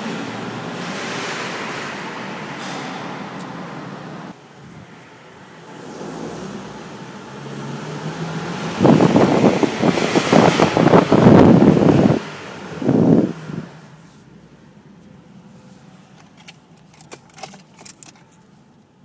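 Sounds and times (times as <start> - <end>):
metallic clicking and rattling: 16.1 - 18.8.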